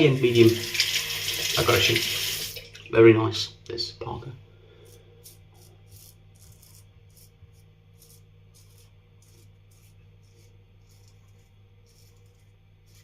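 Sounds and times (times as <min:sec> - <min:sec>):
razor scraping stubble: 0:04.8 - 0:13.0.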